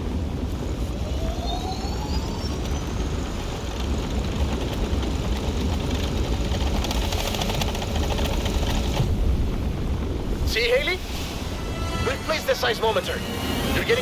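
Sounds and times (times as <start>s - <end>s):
car engine rumbling: 0.0s - 14.0s
rapid crackle of small clicks: 2.1s - 9.7s.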